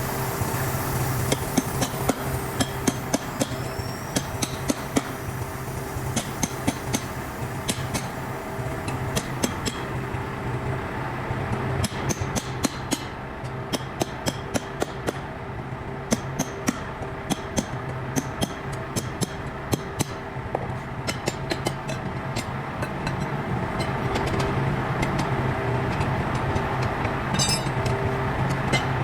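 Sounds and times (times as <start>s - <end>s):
low machine hum: 0.0s - 29.0s
hammer striking metal: 27.3s - 27.9s.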